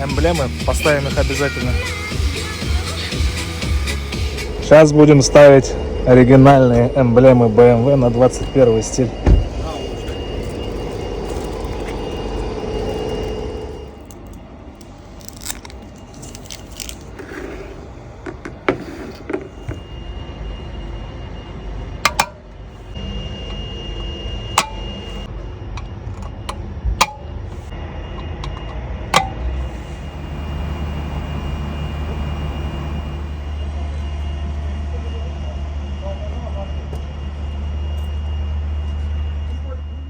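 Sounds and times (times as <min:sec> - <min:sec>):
steady low hum: 0:00.0 - 0:39.5
small parts clicking into place: 0:14.0 - 0:17.1.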